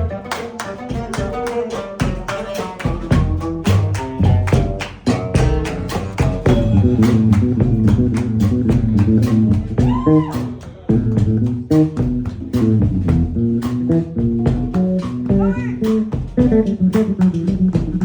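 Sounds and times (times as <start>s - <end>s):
drum beat: 0.0s - 18.0s
guitar playing: 0.0s - 18.0s.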